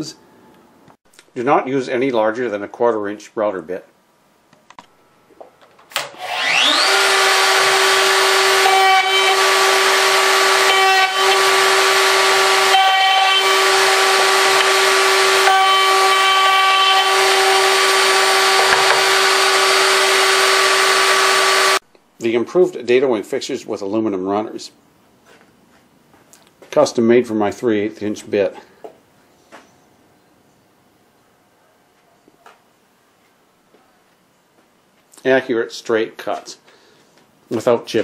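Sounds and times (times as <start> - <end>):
router motor whining: 5.9 - 21.8.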